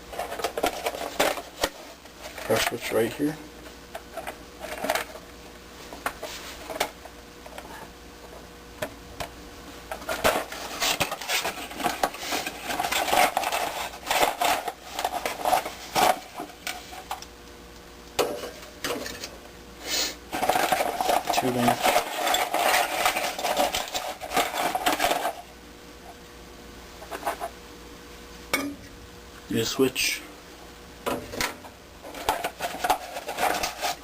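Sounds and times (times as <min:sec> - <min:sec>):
packaging rustling: 0:09.9 - 0:17.2, 0:20.3 - 0:25.5, 0:32.1 - 0:34.0.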